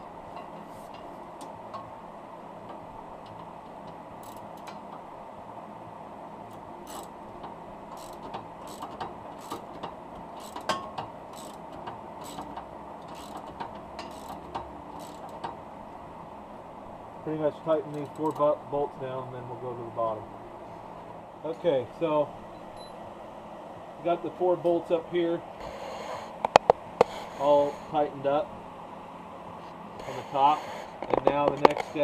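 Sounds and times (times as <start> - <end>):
ratchet wrench clicking: 4.2 - 4.8, 6.9 - 7.1, 7.9 - 11.6, 12.2 - 15.5.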